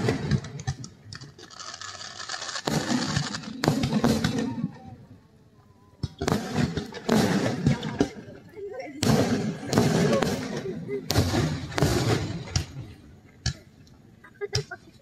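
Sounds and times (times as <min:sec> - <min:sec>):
fireworks crackling: 0:00.0 - 0:04.8, 0:06.1 - 0:08.3, 0:09.0 - 0:13.6
fireworks bangs: 0:00.0 - 0:04.9, 0:06.0 - 0:08.4, 0:09.0 - 0:13.6.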